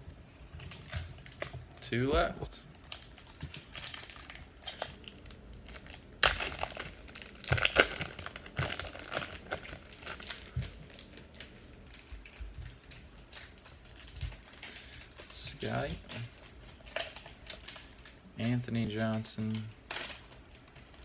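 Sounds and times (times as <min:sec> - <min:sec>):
card pack wrapper tearing: 0:02.8 - 0:21.0.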